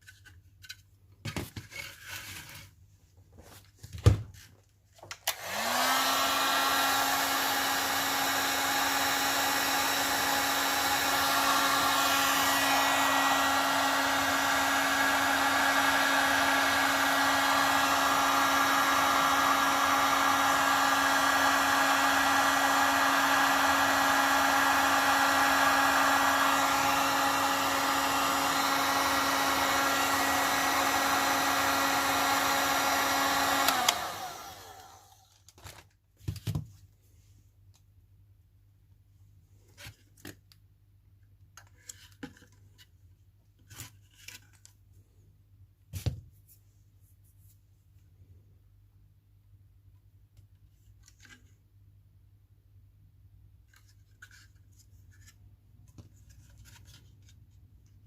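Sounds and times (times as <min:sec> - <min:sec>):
electric blower motor running: 0:05.3 - 0:35.3.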